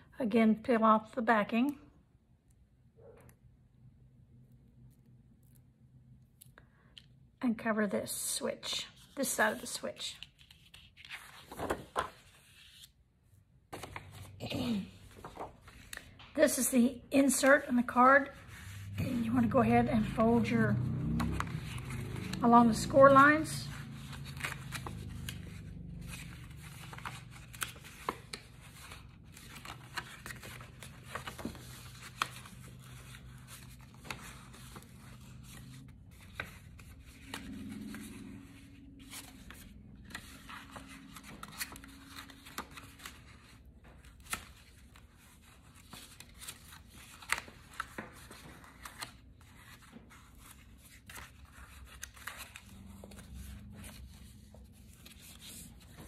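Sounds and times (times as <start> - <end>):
paper crackling and rustling: 9.0 - 13.0, 13.7 - 16.3, 18.2 - 56.0.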